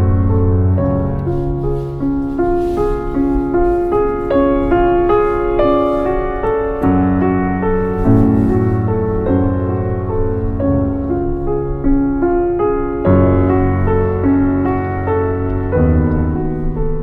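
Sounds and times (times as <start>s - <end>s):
sustained bass notes: 0.0s - 12.5s
gentle piano: 0.0s - 17.0s.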